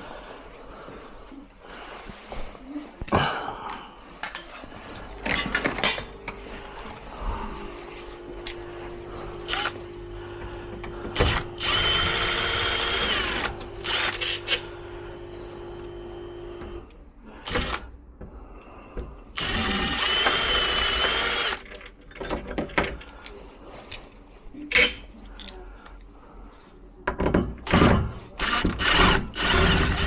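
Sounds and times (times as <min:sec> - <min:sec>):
power drill running: 0:08.0 - 0:10.1, 0:10.7 - 0:17.8, 0:19.3 - 0:21.7, 0:27.6 - 0:30.0.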